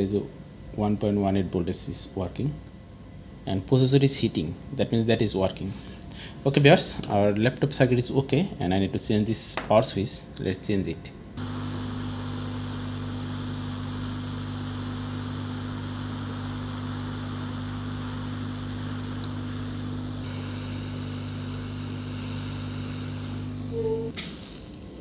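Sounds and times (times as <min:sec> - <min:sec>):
electrical hum: 0:11.2 - 0:24.2
small clicks: 0:18.5 - 0:19.4.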